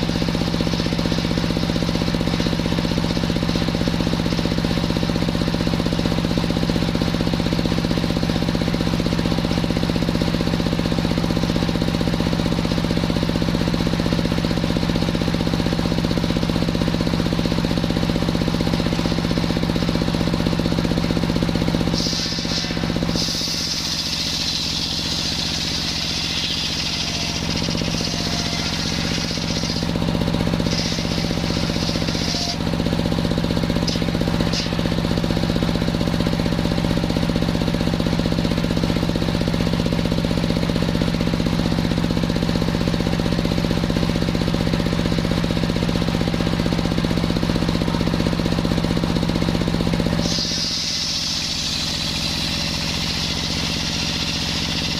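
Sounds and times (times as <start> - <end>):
saw blade cutting wood: 0.0 - 4.0, 18.4 - 35.9, 50.1 - 54.9
sawmill engine knocking hum: 0.0 - 54.9.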